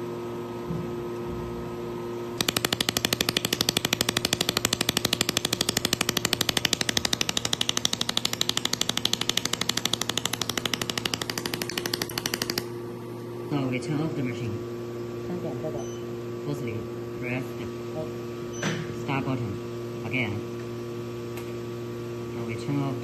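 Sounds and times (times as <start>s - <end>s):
laser welder sharp snaps: 2.4s - 12.7s
machine humming: 2.4s - 15.8s.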